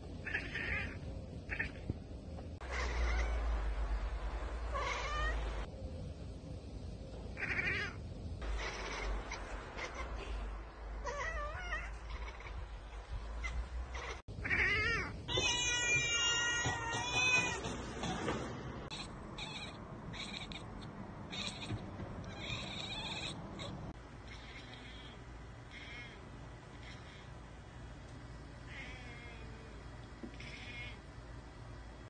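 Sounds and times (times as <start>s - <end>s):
cats chirping and chattering: 7.4s - 18.2s, 18.9s - 27.4s.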